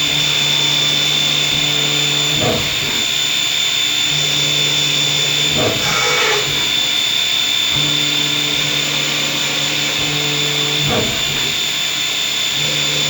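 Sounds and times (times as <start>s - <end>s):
machine high-pitched whine: 0.0s - 13.0s
low motor hum: 4.0s - 11.6s.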